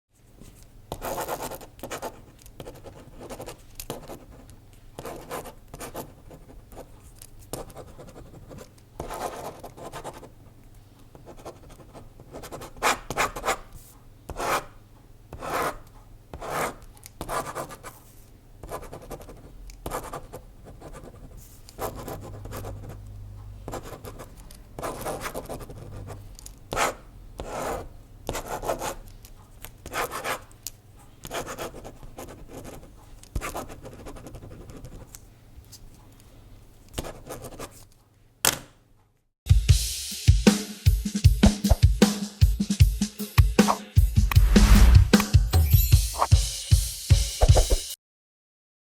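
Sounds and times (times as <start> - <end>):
pen writing on paper: 0.9 - 10.3, 11.1 - 13.6, 14.3 - 14.8, 15.4 - 18.0, 18.6 - 23.0, 23.7 - 29.0, 29.8 - 30.5, 31.2 - 35.1, 37.0 - 37.7.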